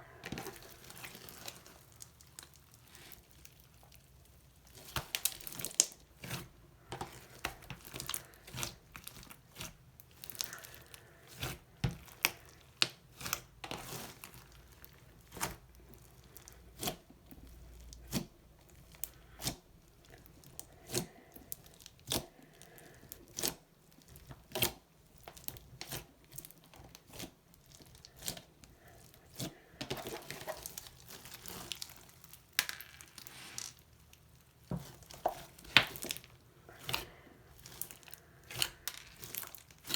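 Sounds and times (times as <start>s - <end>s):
slime being kneaded: 0.0s - 39.9s.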